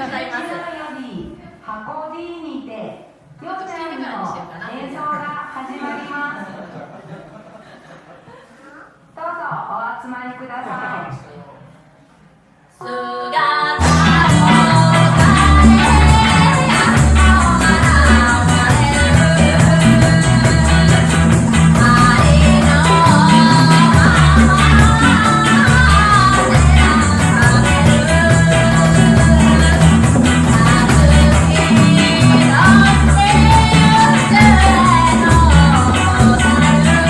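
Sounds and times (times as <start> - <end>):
music with singing: 12.9 - 37.0
heavy repeating bass line: 13.8 - 37.0.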